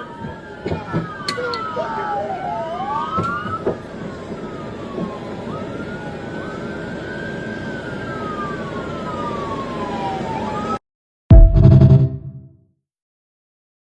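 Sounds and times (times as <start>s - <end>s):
police siren wailing: 0.0s - 10.8s
vehicle and road noise: 0.0s - 10.8s.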